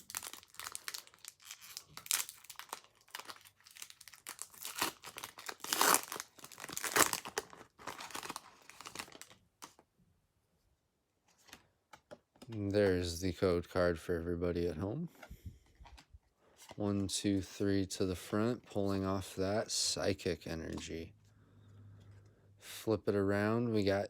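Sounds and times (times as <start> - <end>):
foil pack tearing and crinkling: 0.0 - 9.7.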